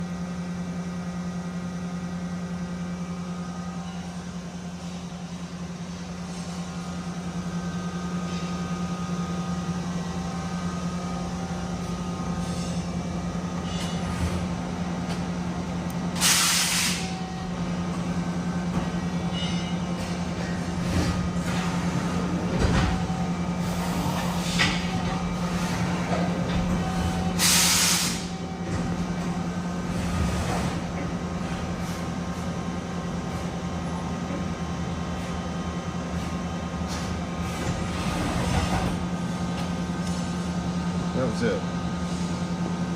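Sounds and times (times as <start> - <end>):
loud hiss of air: 16.2 - 17.2, 27.3 - 28.4.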